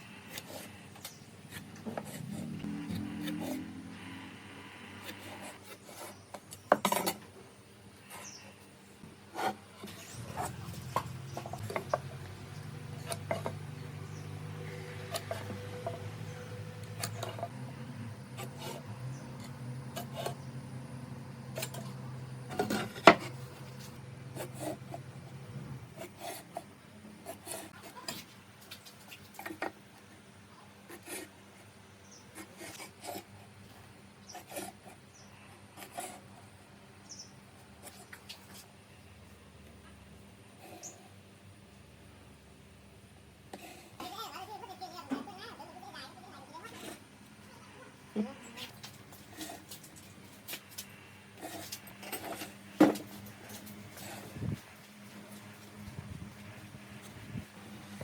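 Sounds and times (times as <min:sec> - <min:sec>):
wood and tools knocking: 0:13.0 - 0:13.7, 0:22.5 - 0:23.4, 0:52.0 - 0:53.2.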